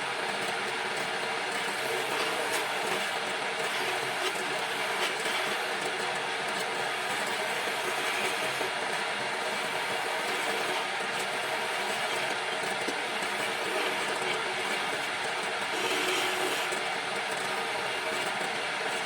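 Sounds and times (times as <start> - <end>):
wood lathe cutting wood: 1.7 - 3.1, 6.9 - 8.7, 13.2 - 15.0, 15.6 - 16.8.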